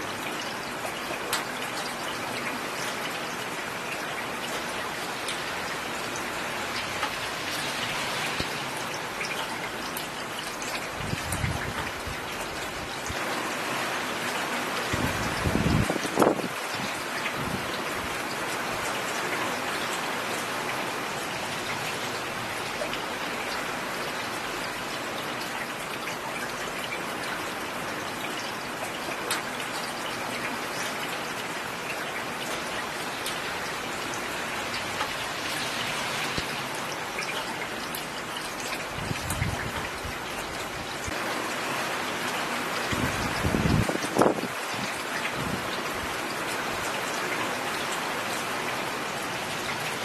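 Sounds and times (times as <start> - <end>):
rain falling on road: 0.0 - 50.0.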